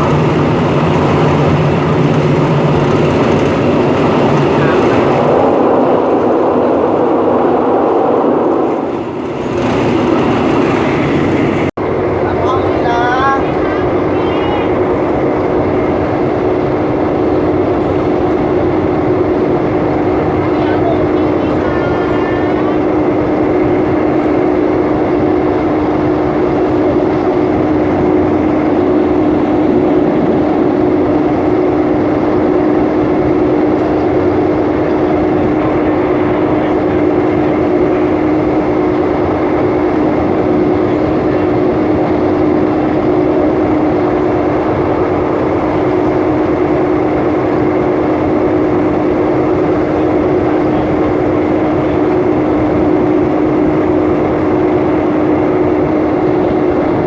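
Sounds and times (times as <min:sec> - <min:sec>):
constant hum: 0:00.0 - 0:57.0
train rumble: 0:00.0 - 0:57.0.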